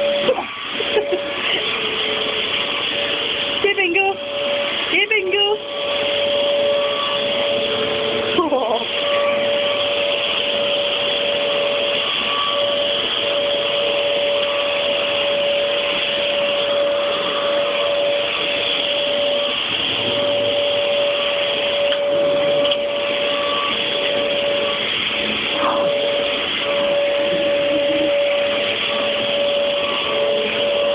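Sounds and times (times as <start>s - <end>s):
vacuum cleaner whining: 0.0s - 30.9s.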